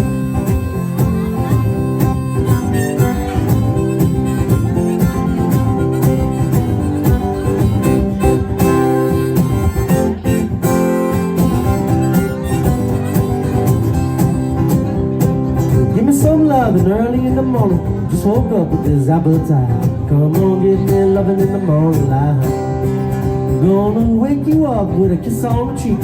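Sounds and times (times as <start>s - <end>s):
harmonica playing: 0.0s - 15.9s
acoustic guitar strumming: 0.0s - 26.0s.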